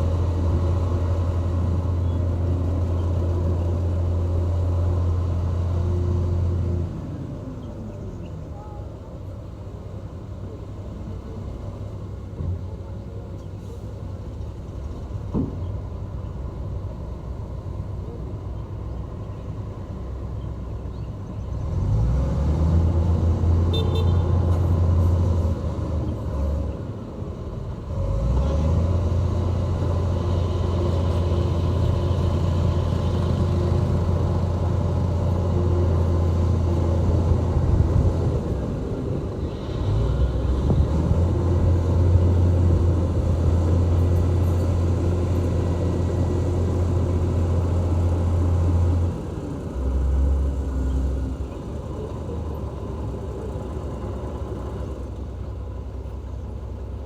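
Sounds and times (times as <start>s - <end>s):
diesel engine droning: 0.0s - 57.0s.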